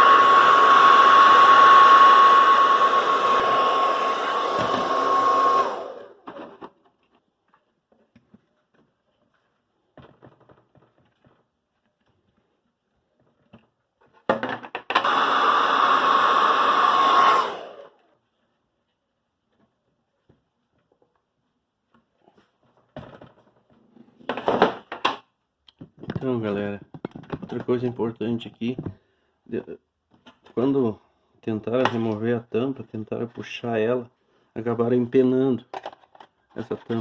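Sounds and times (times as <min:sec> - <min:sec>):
hair dryer whining: 0:00.0 - 0:06.7, 0:14.9 - 0:18.1.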